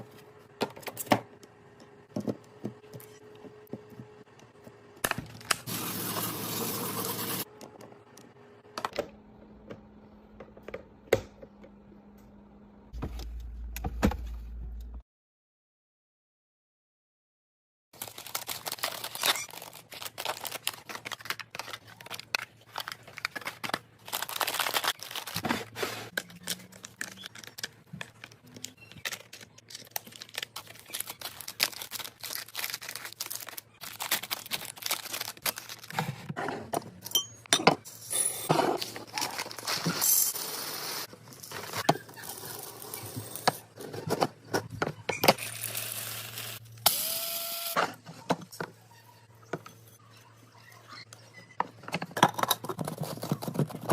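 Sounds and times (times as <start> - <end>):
plastic packaging crinkling and tearing: 18.0 - 36.0, 38.8 - 40.3.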